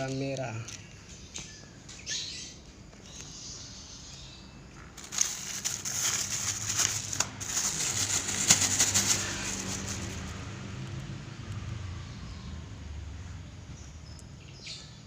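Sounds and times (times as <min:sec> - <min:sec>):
rustling and crackling handling noise: 0:04.8 - 0:10.4.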